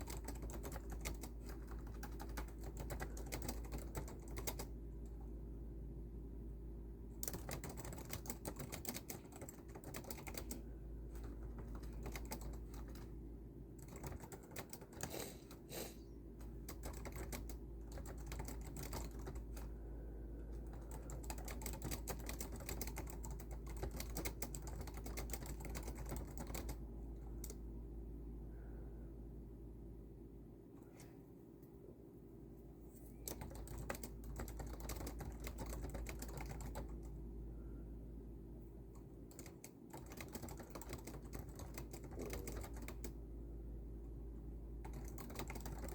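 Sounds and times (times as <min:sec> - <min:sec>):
typing on computer keyboard: 0:00.0 - 0:05.2, 0:07.2 - 0:13.1, 0:13.8 - 0:15.7, 0:16.4 - 0:19.8, 0:20.5 - 0:27.6, 0:33.2 - 0:37.2, 0:38.9 - 0:43.2, 0:44.8 - 0:45.9.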